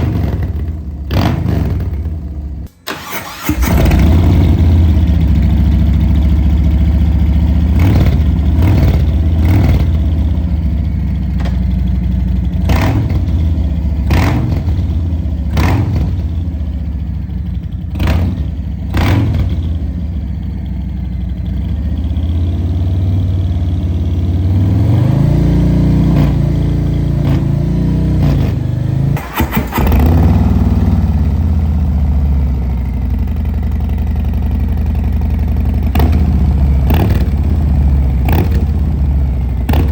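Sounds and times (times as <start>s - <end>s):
engine revving: 2.9s - 10.2s, 12.5s - 16.4s, 17.8s - 19.8s, 24.2s - 31.6s, 35.9s - 39.9s
motorcycle engine running: 3.5s - 39.9s
exhaust cracks: 29.1s - 30.8s.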